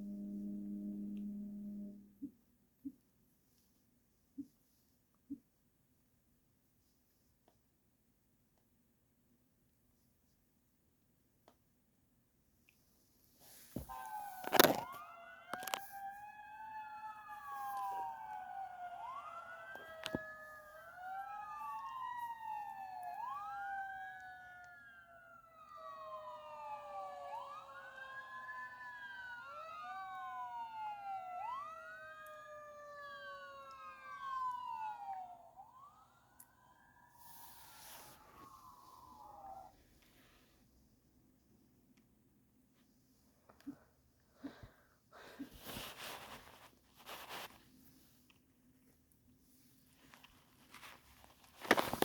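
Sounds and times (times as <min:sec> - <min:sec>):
emergency vehicle sirens wailing: 0:00.0 - 0:02.3, 0:13.8 - 0:40.3.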